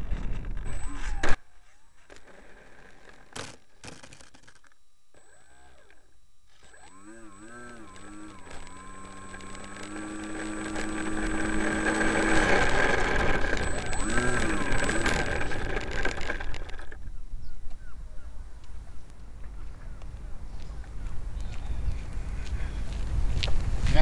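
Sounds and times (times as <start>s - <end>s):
electric motor whine: 0.0s - 17.4s
clicks: 2.0s - 17.0s
wind noise on microphone: 19.6s - 24.0s.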